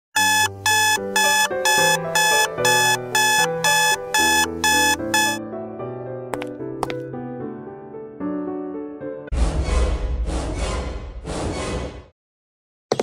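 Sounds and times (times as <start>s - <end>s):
digital alarm clock beeping: 0.2s - 5.4s.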